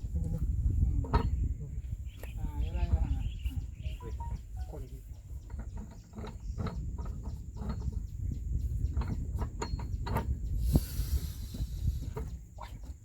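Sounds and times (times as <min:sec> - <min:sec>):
clicks and knocks on machinery: 0:05.4 - 0:10.6.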